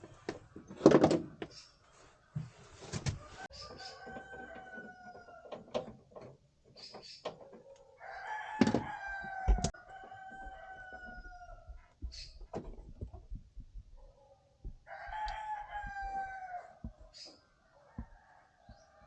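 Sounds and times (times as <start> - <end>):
rooster crowing: 3.2 - 5.5, 8.0 - 11.9, 14.8 - 17.0, 17.6 - 19.0.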